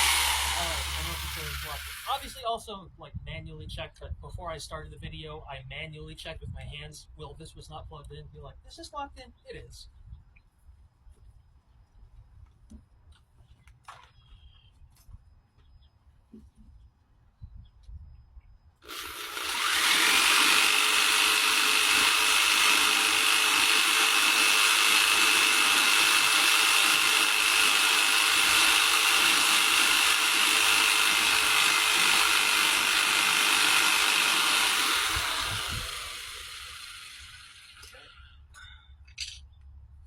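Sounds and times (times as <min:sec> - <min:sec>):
jigsaw cutting wood: 0:00.0 - 0:02.4, 0:18.8 - 0:38.0.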